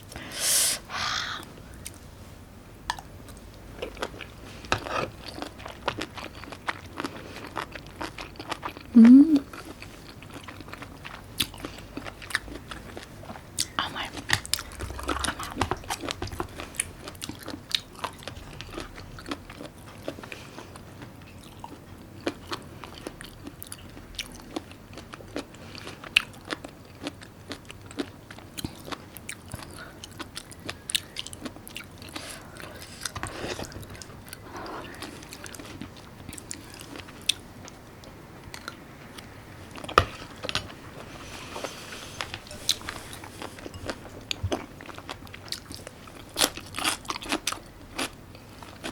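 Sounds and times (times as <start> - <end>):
food crunching: 2.9 - 48.9
person chewing food: 2.9 - 48.9.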